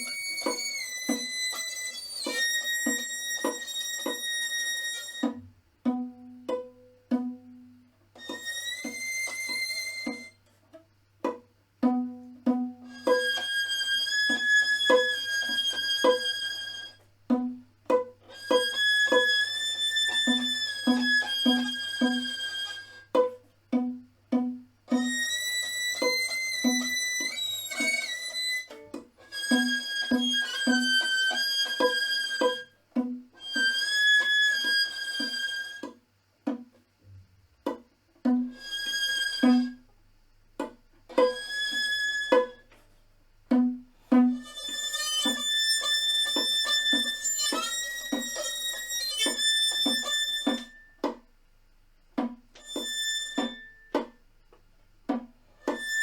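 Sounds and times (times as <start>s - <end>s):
high bowed string melody: 0.0s - 36.6s, 38.2s - 39.9s, 41.1s - 42.8s, 43.5s - 51.2s, 52.2s - 54.2s, 55.1s - 56.0s.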